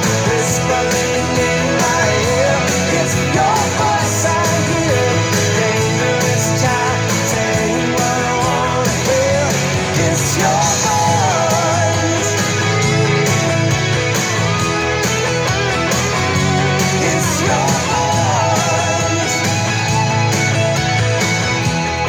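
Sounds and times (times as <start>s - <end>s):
person singing: 0.0s - 13.1s, 16.6s - 19.8s
rock song on guitars: 0.0s - 22.0s.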